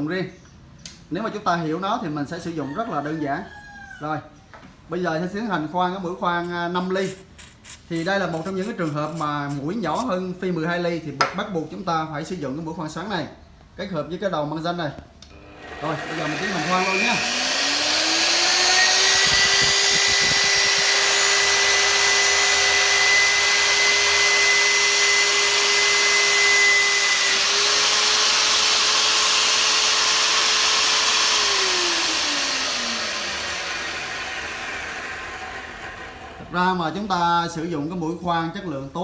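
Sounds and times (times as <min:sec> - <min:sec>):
drill bit drilling through steel: 0:06.4 - 0:10.2, 0:15.6 - 0:36.3
drill motor running: 0:06.4 - 0:10.2, 0:15.3 - 0:36.8.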